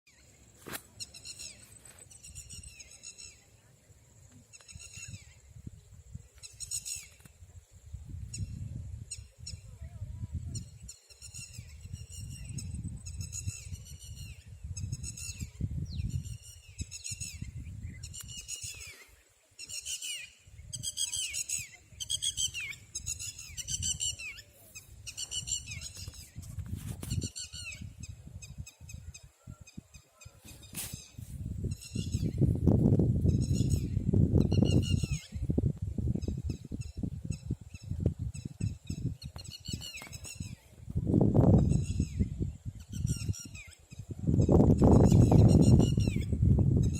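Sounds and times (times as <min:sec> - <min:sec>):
lapwing calling: 0:15.1 - 0:26.3.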